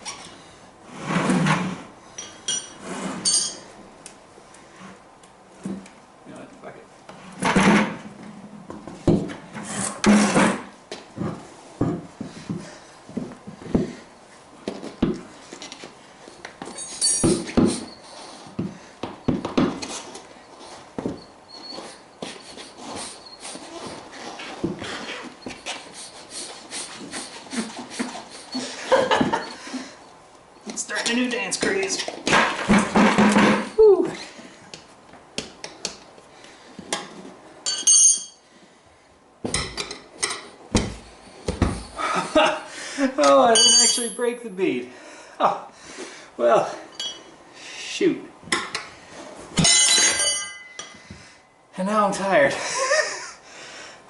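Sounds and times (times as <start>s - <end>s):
ringing metal clink: 3.3s - 3.6s, 16.8s - 17.3s, 37.6s - 38.4s, 43.6s - 44.2s, 46.9s - 47.3s, 49.6s - 51.0s
heavier knocks and thumps: 8.7s - 9.4s, 10.0s - 14.0s, 18.5s - 19.8s, 31.7s - 33.7s, 40.7s - 42.0s
thumps of motorcycle tire handling: 8.7s - 9.4s, 40.7s - 41.8s.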